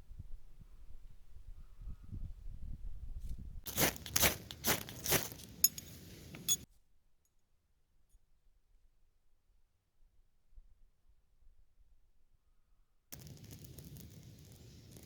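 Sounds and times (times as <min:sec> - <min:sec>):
loud sharp crunches: 0:03.7 - 0:06.0.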